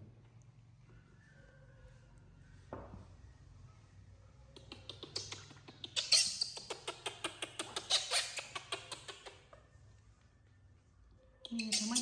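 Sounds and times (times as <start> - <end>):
small animal squeaking: 4.6 - 9.6, 11.4 - 12.0.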